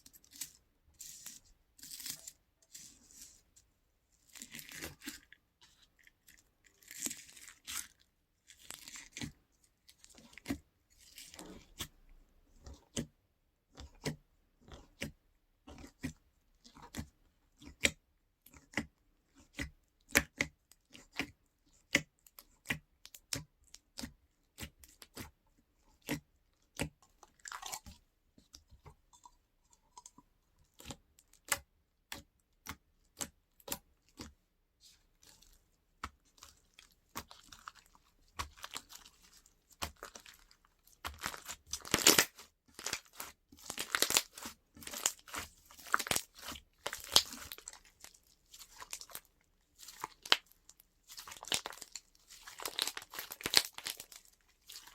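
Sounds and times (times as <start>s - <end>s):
crunchy slime popping and crackling: 36.7s - 54.9s.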